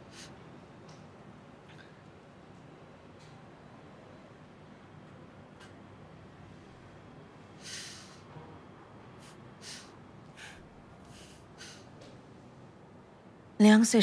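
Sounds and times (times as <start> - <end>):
person breathing and sniffing: 0.0 - 0.3, 7.6 - 8.3, 9.2 - 11.9
faint room hiss: 0.0 - 14.0.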